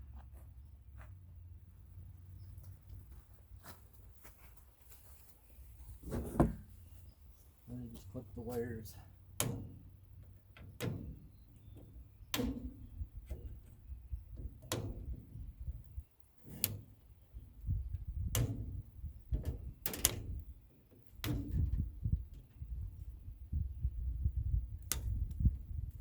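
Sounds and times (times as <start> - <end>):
low handling noise: 5.9 - 7.2.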